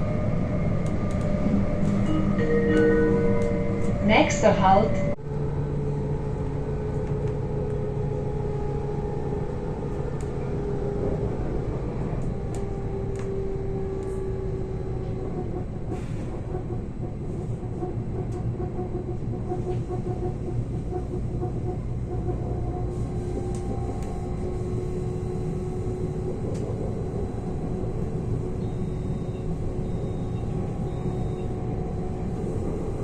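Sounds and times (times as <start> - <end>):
vehicle rumble and hum: 0.0 - 33.0.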